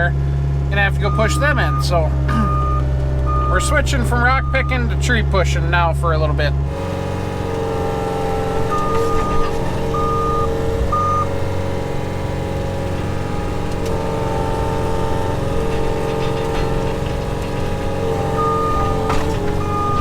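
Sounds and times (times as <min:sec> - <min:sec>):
loader engine running: 0:00.0 - 0:20.0
backup alarm beeps: 0:01.0 - 0:03.7, 0:04.3 - 0:04.8, 0:08.6 - 0:11.3, 0:18.3 - 0:20.0.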